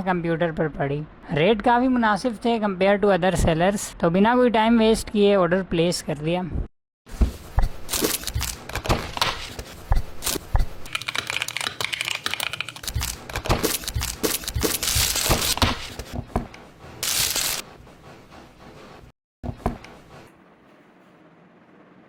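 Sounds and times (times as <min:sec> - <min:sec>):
packaging ripping: 0:10.3 - 0:16.1, 0:17.0 - 0:17.6
plastic and paper crinkling: 0:10.9 - 0:16.2, 0:17.0 - 0:17.6.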